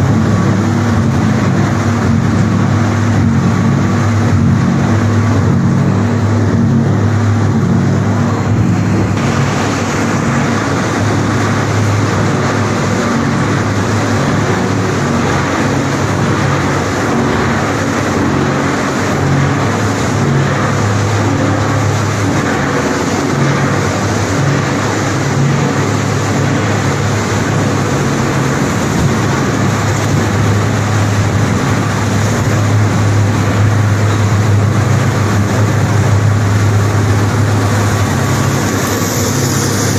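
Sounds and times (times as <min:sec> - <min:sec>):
broad rushing noise: 0:00.0 - 0:39.9
heavy machinery humming: 0:00.0 - 0:39.9.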